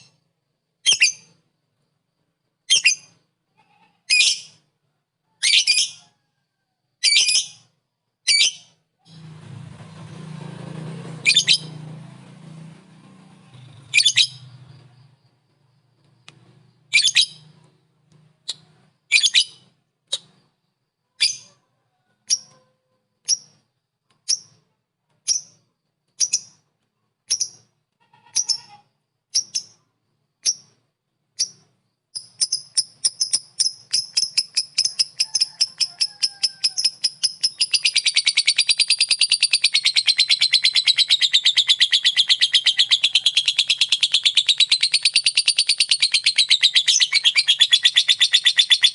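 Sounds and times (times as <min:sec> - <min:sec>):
lovebird calling: 0:11.2 - 0:11.8, 0:13.8 - 0:14.9, 0:16.9 - 0:17.6, 0:32.2 - 0:48.9.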